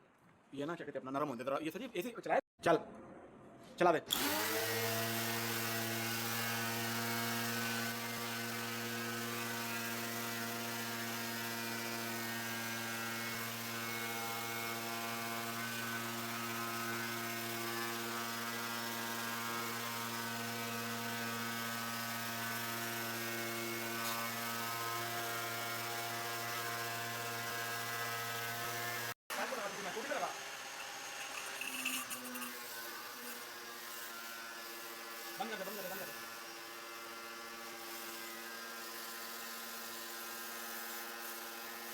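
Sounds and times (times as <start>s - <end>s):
electric motor humming: 28.4s - 36.1s.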